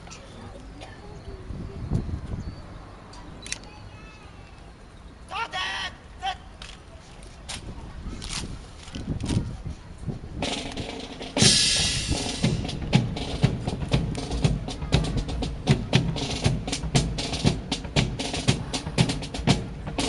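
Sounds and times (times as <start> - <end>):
loud hissing crash: 11.4 - 12.8.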